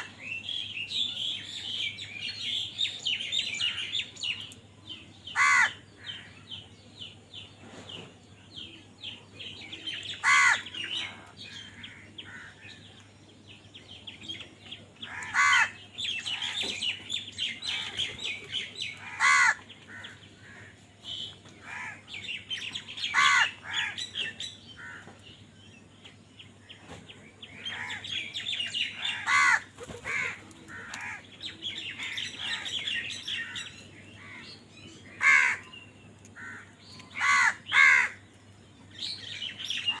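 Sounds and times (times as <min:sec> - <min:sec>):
flock of small birds twittering: 0:00.0 - 0:40.0
crows cawing: 0:05.3 - 0:06.3, 0:10.2 - 0:12.8, 0:15.0 - 0:16.8, 0:18.9 - 0:20.8, 0:21.6 - 0:22.1, 0:23.0 - 0:24.0, 0:24.8 - 0:25.2, 0:29.0 - 0:31.3, 0:32.0 - 0:34.6, 0:35.2 - 0:35.7, 0:36.4 - 0:38.2.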